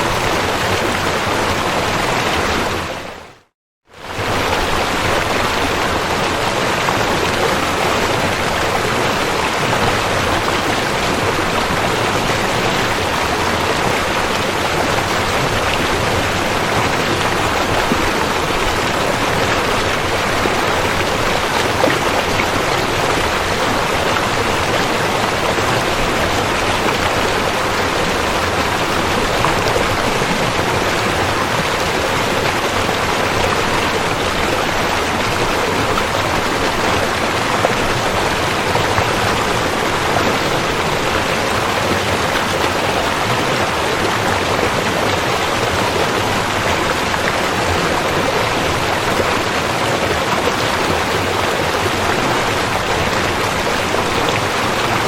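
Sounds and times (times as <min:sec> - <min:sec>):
river water rushing: 0:00.0 - 0:03.3, 0:04.0 - 0:55.0.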